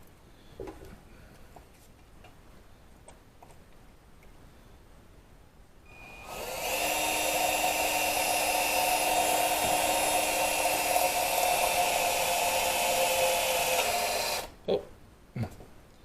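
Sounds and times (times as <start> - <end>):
electric drill whining: 5.9 - 14.6.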